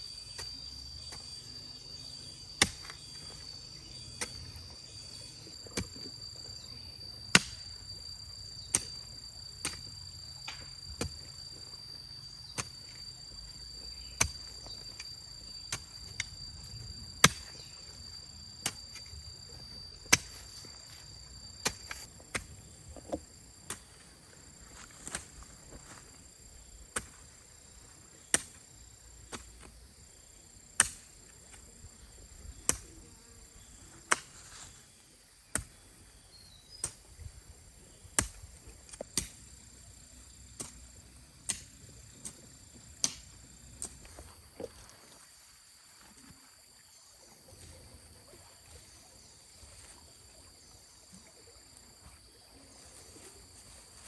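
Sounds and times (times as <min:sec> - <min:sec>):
high insect trill: 0:00.0 - 0:54.0
hand tool chopping strikes: 0:02.6 - 0:02.9, 0:07.4 - 0:07.6, 0:20.1 - 0:20.5.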